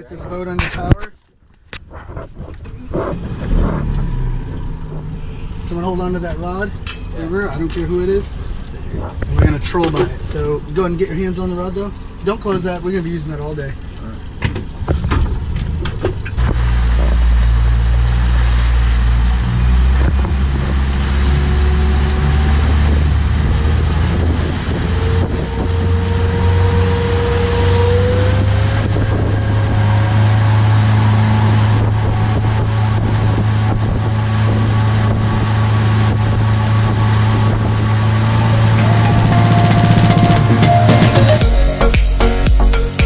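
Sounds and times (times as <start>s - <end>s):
motorboat engine running: 2.6s - 6.8s, 10.6s - 41.8s
rushing noise: 35.5s - 43.0s.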